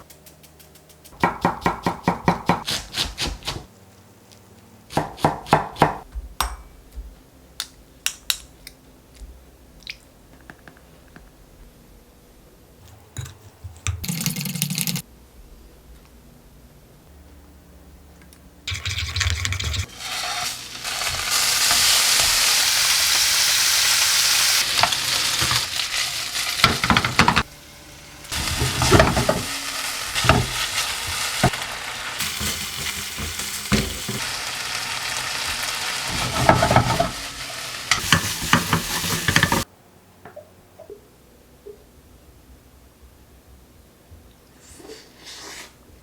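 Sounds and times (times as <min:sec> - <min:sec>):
meat sizzling in a pan: 0:19.8 - 0:39.7
spatula scraping a pan: 0:36.0 - 0:37.3.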